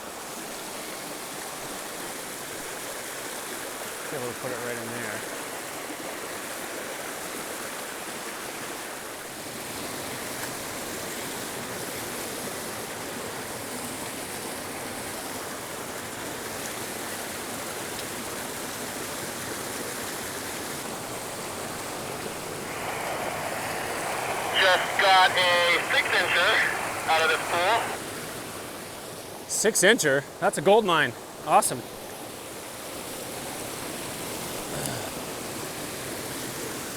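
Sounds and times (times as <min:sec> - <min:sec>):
creek water rushing over rocks: 0:22.7 - 0:27.8.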